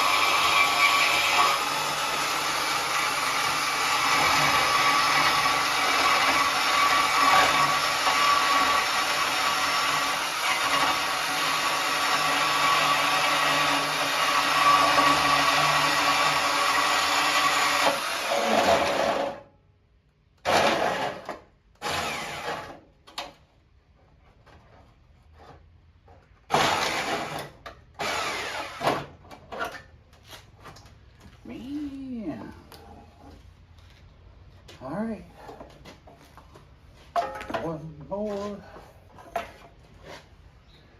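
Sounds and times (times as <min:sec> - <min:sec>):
handheld power tool running: 0:00.0 - 0:19.4, 0:20.4 - 0:22.8.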